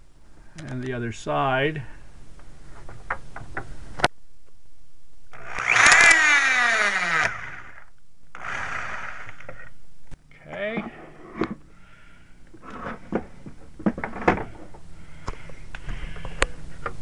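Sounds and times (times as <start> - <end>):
electric screw gun whining: 5.3 - 9.7.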